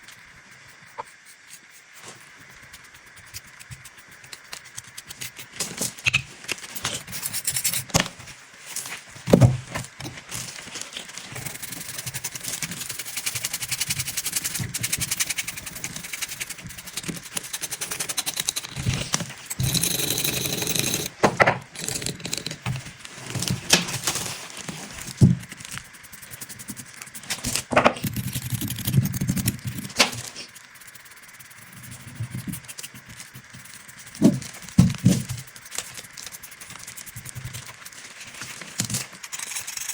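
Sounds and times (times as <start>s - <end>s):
small metal parts clicking: 11.4s - 21.1s, 21.7s - 22.7s
tool scraping metal: 14.6s - 23.6s.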